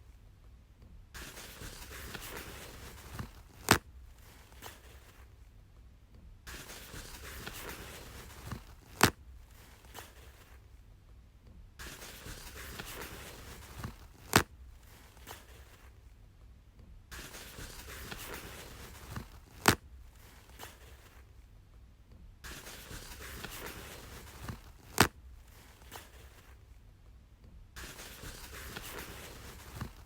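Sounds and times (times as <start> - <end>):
toilet paper tearing: 1.2 - 5.1, 6.5 - 10.4, 11.8 - 15.8, 17.1 - 21.2, 22.4 - 26.5, 27.8 - 30.0
toilet paper unrolling: 1.2 - 5.3, 6.5 - 10.6, 11.8 - 15.9, 17.1 - 21.3, 22.4 - 26.6, 27.8 - 30.0.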